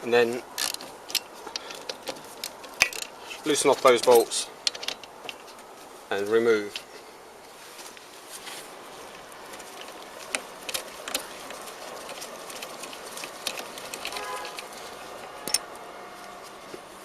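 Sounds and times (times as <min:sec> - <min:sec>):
metallic clicks of hand tools: 0:00.6 - 0:03.2, 0:15.4 - 0:15.7.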